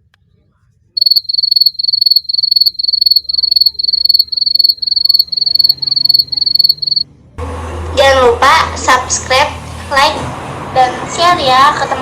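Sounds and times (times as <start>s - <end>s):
insect chirping trill: 1.0s - 7.0s.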